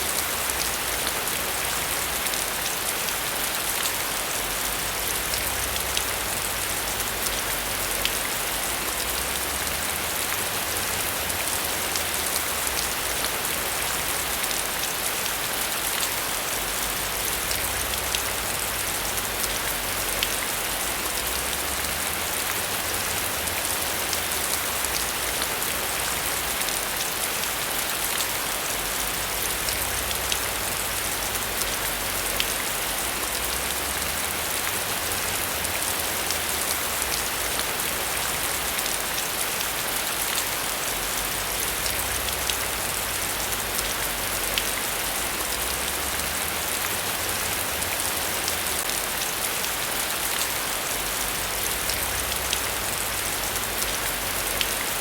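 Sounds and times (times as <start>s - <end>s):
steady rain hiss: 0.0s - 55.0s.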